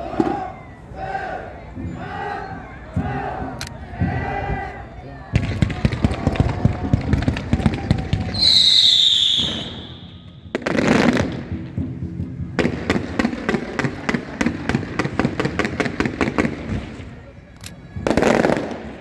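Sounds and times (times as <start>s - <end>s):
firework crackling reports: 5.3s - 19.0s
whistling firework: 5.3s - 19.0s.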